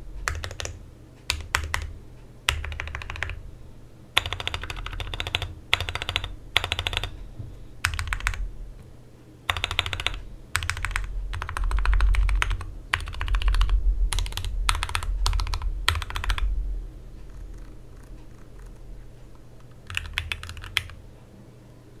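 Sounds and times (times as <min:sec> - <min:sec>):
mechanical keyboard typing: 0:00.2 - 0:01.9, 0:02.5 - 0:03.4, 0:04.2 - 0:07.2, 0:07.8 - 0:08.4, 0:09.5 - 0:16.5, 0:17.2 - 0:21.0.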